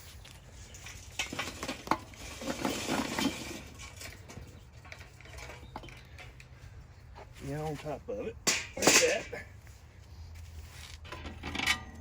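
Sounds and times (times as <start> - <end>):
charcoal clattering on metal: 8.4 - 9.5.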